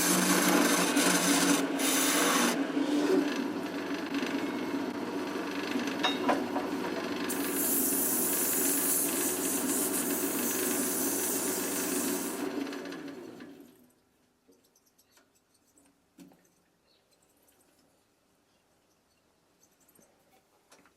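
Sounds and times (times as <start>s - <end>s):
power tool motor running: 0.0s - 4.6s
loud abrasion hissing: 7.3s - 12.4s.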